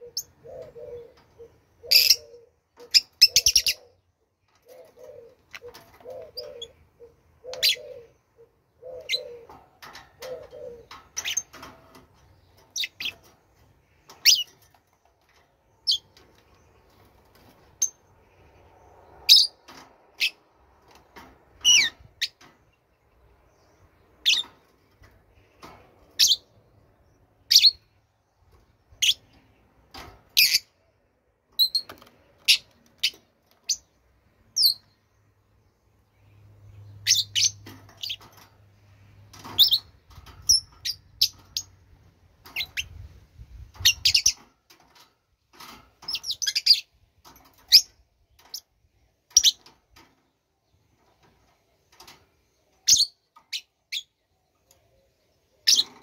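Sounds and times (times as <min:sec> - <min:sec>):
lower repeated bird notes: 0:00.0 - 0:11.9
birds chirping: 0:00.0 - 0:45.0, 0:46.0 - 0:56.0.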